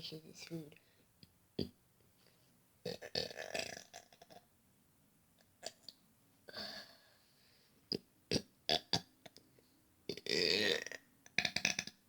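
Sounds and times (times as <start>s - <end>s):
person burping: 2.9s - 4.1s, 10.1s - 12.0s.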